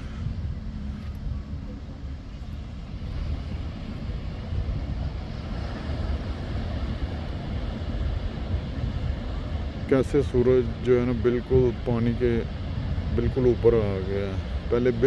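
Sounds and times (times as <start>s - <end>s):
ocean surf washing on beach: 0.0s - 15.0s
wind rumbling on microphone: 0.0s - 15.0s.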